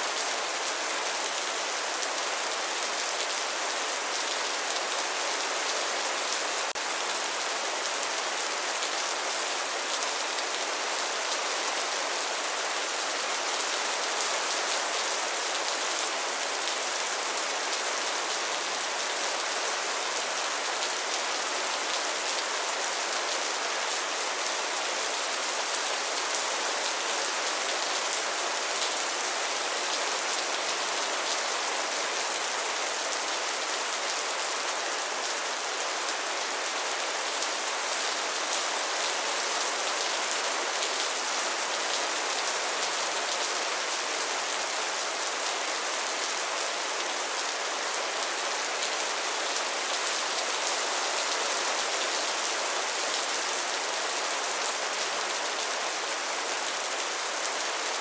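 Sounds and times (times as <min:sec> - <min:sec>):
steady rain pattering: 0:00.0 - 0:58.0.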